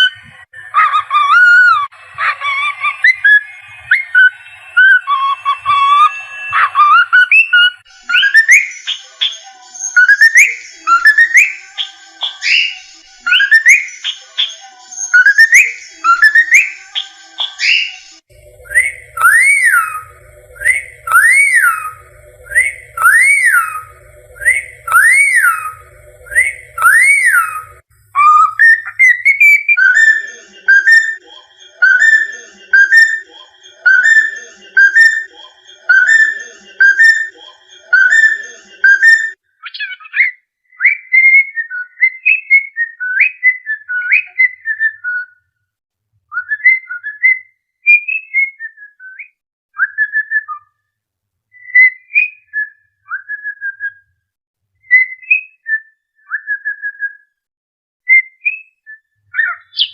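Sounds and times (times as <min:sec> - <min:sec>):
cockatiel whistling: 0:00.8 - 0:08.7, 0:17.6 - 0:30.1, 0:59.4 - 0:59.9.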